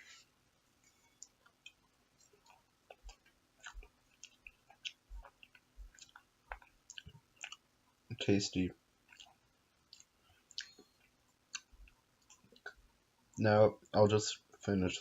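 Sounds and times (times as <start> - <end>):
close-up chewing of soft food: 0.9 - 8.1, 8.9 - 13.4.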